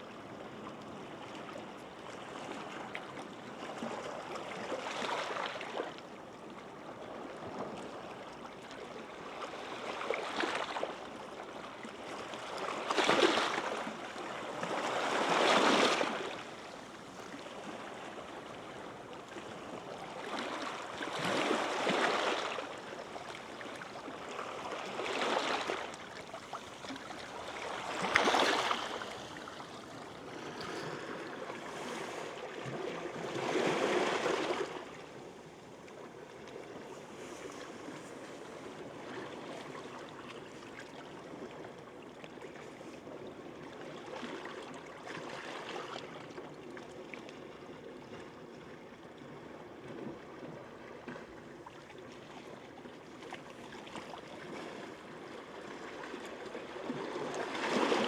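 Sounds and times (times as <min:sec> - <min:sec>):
waves washing up a beach: 0:06.7 - 0:46.3, 0:53.2 - 0:58.0.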